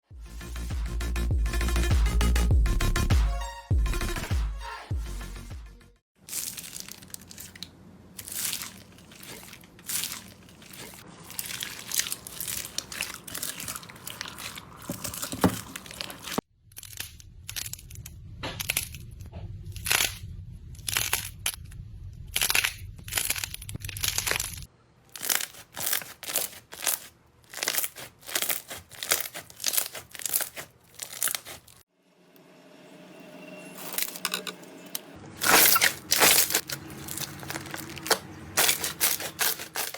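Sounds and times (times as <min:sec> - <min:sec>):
slime crackling when squeezed: 0:22.4 - 0:31.8, 0:35.4 - 0:39.9.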